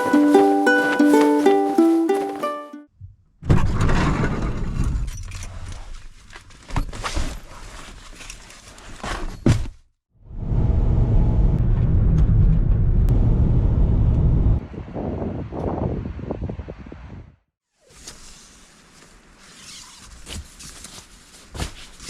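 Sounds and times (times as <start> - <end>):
wind buffeting microphone: 12.0 - 17.4.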